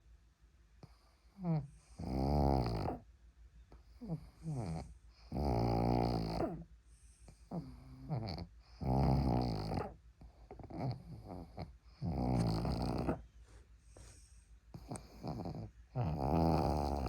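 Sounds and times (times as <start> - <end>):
dog snoring: 0.8 - 3.1, 3.9 - 6.7, 7.3 - 13.2, 14.1 - 17.0
dog snuffling breaths: 5.4 - 17.0.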